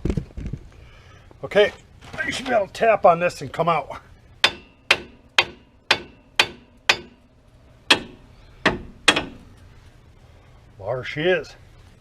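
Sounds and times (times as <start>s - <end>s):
hammer striking metal: 4.4s - 7.3s, 7.9s - 9.5s.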